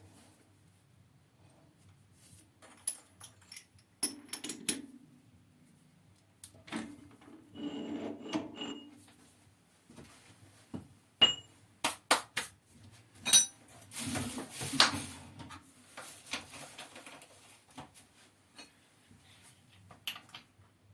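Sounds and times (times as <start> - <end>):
metal parts clicking and knocking: 2.6 - 4.9
metal scraping rub: 7.5 - 8.8.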